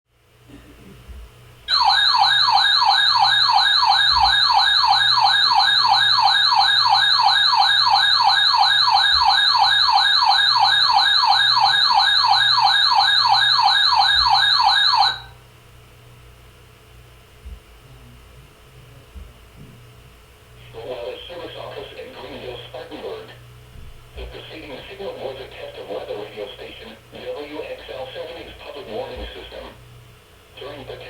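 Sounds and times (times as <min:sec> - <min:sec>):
electronic siren sweeping: 0:01.7 - 0:15.3.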